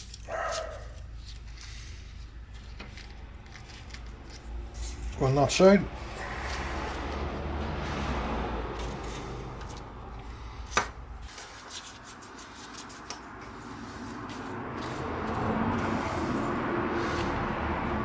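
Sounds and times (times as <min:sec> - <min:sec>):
small parts and tools handled: 0:00.0 - 0:05.8.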